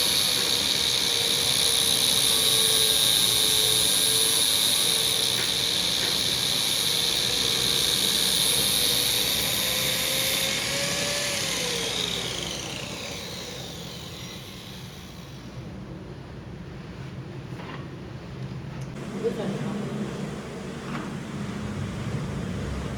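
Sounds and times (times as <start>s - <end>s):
electric workshop machine motor whine: 0.0s - 15.5s.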